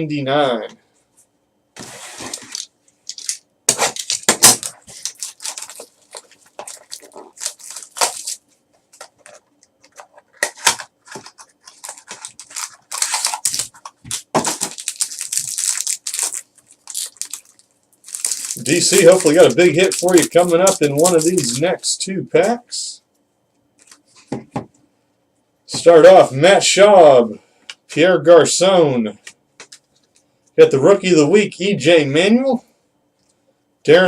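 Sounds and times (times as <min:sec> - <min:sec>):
card packaging tearing and crinkling: 0:01.8 - 0:21.8
cards rustling: 0:01.8 - 0:21.8.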